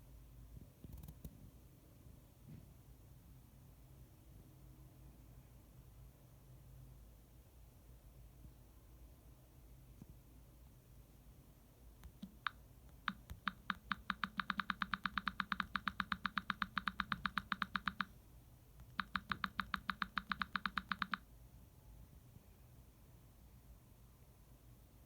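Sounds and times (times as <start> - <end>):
button rapid clicking: 12.0 - 18.1, 18.8 - 21.2.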